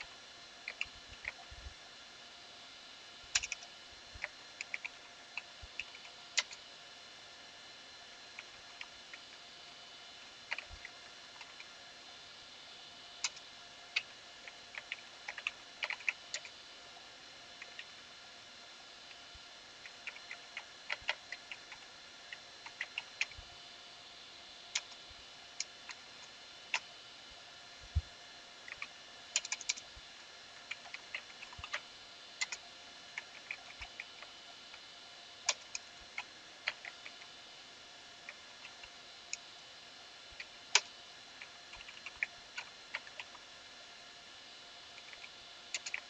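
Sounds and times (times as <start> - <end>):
faint electrical hum: 0.0 - 46.0
keyboard keystroke clicks: 3.4 - 3.6, 28.7 - 29.8.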